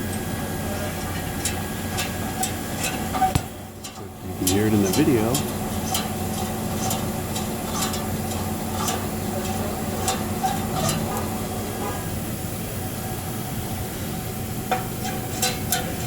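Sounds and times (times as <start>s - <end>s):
engine and road hum: 0.0s - 16.0s
metallic exhaust valve ticking: 1.0s - 11.4s, 14.6s - 16.0s.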